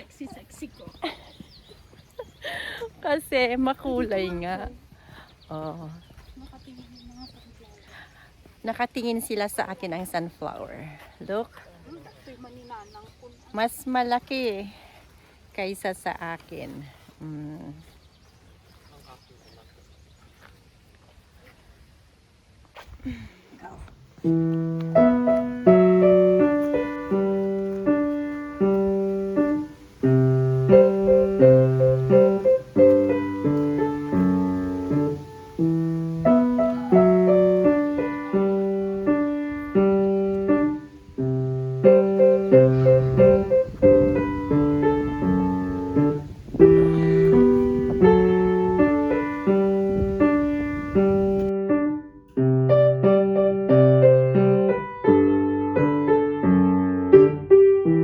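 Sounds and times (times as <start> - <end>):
piano piece: 24.2 - 58.0.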